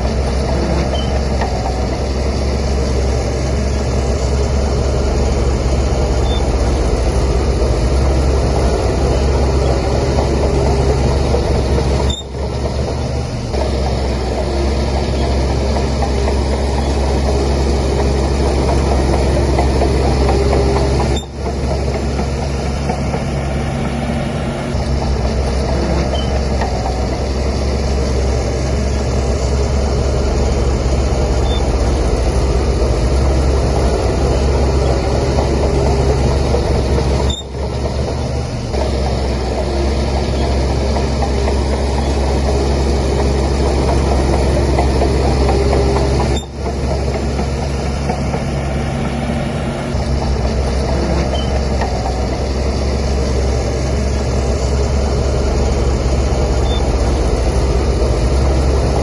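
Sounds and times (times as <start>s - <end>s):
bulldozer diesel engine rumbling: 0.0s - 59.0s.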